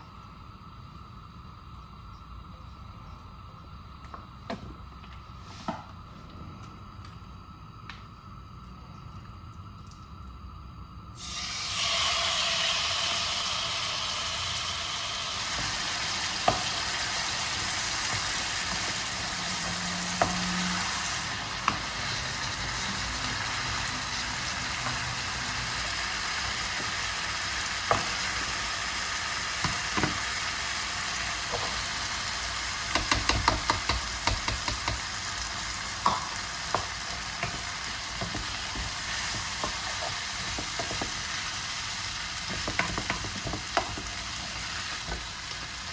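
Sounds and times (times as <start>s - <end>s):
food sizzling in a frying pan: 11.2s - 45.9s.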